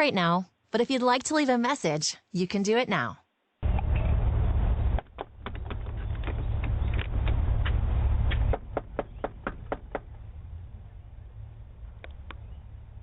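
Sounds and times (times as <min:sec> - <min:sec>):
low rumble: 0:03.6 - 0:13.0
knocking on door: 0:08.5 - 0:10.1.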